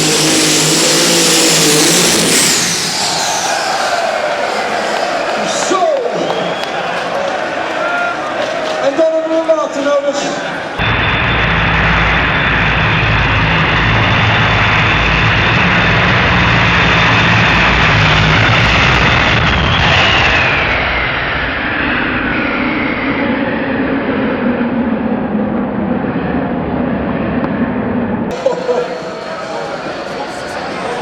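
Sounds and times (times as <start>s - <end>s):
tractor engine whining: 0.0s - 7.1s, 10.6s - 25.4s.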